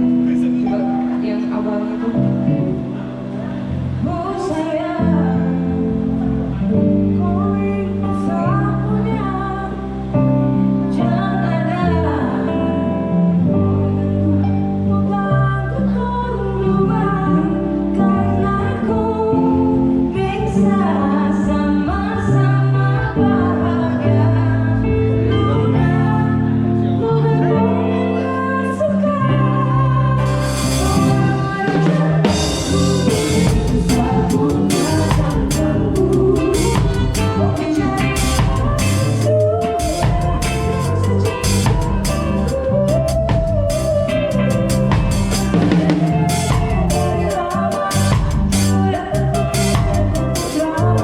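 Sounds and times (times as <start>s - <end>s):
live band chords and bass: 0.0s - 51.0s
drum kit beat: 30.2s - 51.0s.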